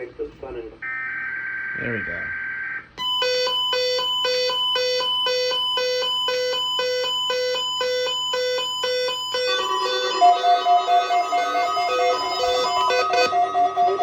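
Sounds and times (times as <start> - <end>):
electronic alert tone beeping: 3.0 - 14.0.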